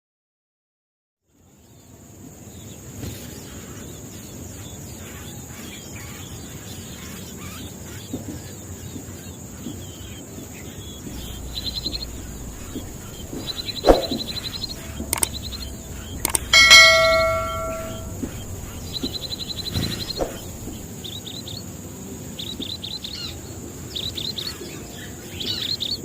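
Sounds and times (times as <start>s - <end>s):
outdoor background noise: 1.4s - 26.0s
bird chirping in trills: 11.1s - 20.8s
sharp click: 11.2s - 20.8s.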